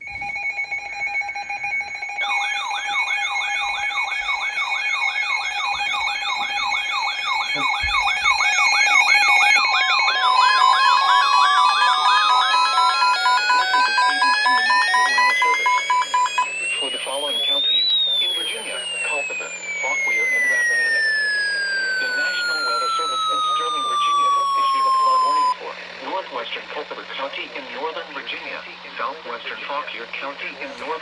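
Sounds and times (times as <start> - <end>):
two-pitch alarm tone: 0.0 - 25.6
warbling siren: 0.0 - 25.6
rapid beeping: 0.3 - 25.6
rising tone: 2.2 - 25.6.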